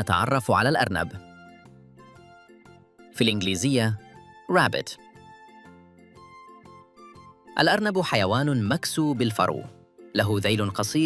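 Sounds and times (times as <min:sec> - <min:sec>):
soft children's background music: 0:00.0 - 0:11.0.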